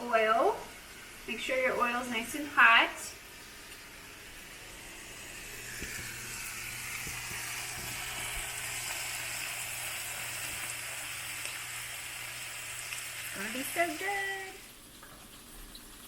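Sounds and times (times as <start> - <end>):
meat frying in hot oil: 0.0 - 16.0
oil popping: 5.4 - 9.5.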